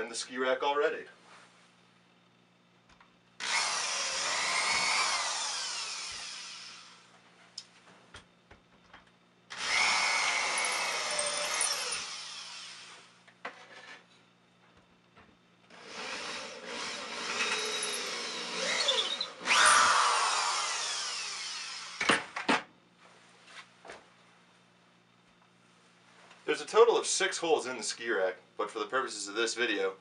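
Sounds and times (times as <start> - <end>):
power drill drilling: 3.4 - 7.1, 9.5 - 13.1, 15.7 - 22.2.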